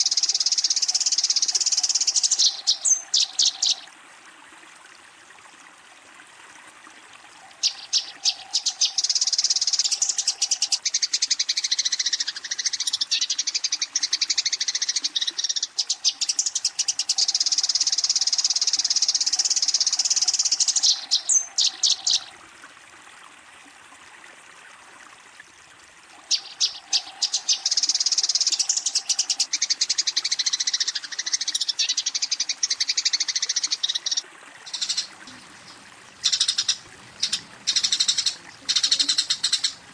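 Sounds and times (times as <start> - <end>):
sparrow fast chirping: 32.7 - 39.8.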